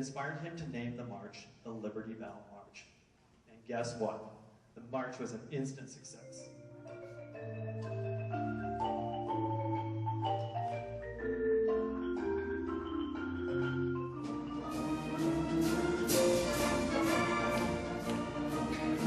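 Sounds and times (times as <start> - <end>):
orchestral ensemble playing chords: 6.0 - 19.0.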